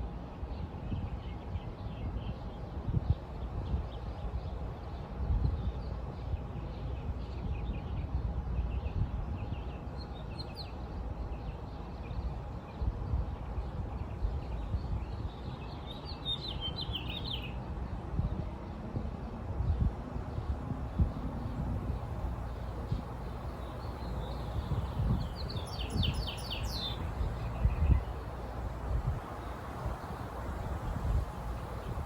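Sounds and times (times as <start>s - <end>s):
steady low rumble: 19.5s - 32.0s
small birds chirping: 22.2s - 32.0s.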